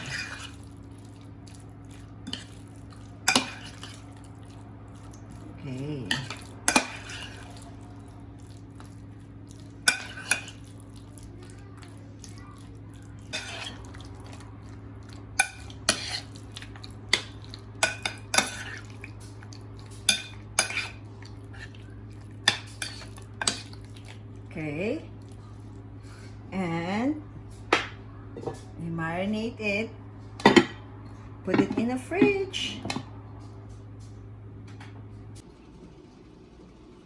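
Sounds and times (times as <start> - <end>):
utensil scraping a bowl: 0.0 - 0.7, 13.3 - 14.1, 15.4 - 16.4.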